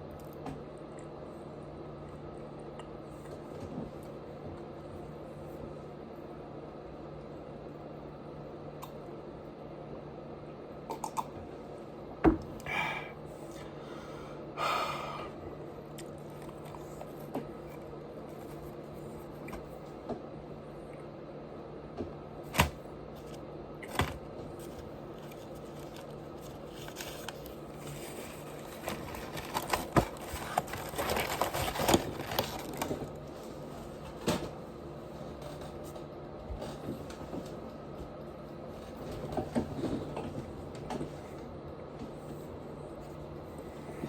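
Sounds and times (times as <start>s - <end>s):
low steady hum: 0.0s - 44.0s
chewing with mouth clicks: 10.9s - 11.4s.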